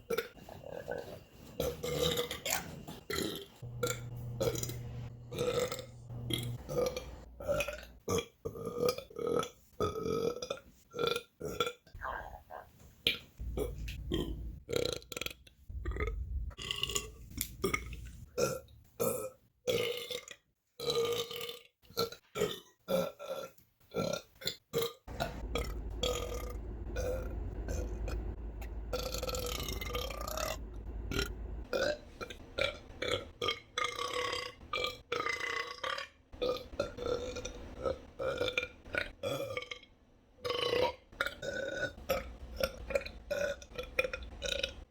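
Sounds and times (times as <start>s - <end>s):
woman belching: 3.1s - 9.0s, 29.0s - 32.0s.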